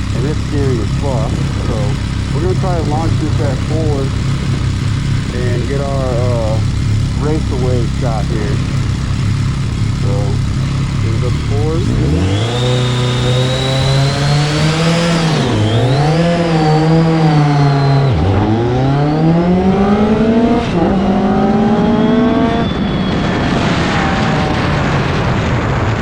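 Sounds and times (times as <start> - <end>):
motorcycle engine accelerating: 0.0 - 26.0
wind noise: 22.6 - 26.0.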